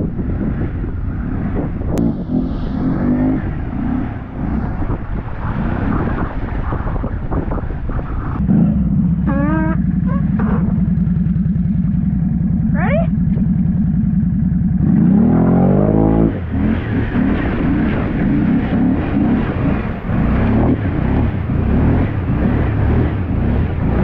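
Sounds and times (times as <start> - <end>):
atv engine running: 0.0 - 24.0
wind buffeting microphone: 0.0 - 24.0.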